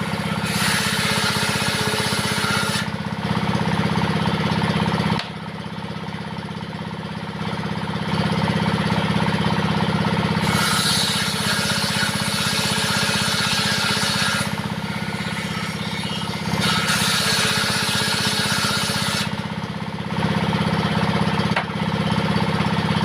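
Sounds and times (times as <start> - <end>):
saw blade ripping wood: 0.0 - 3.0, 10.4 - 19.5
diesel engine running: 0.0 - 23.0.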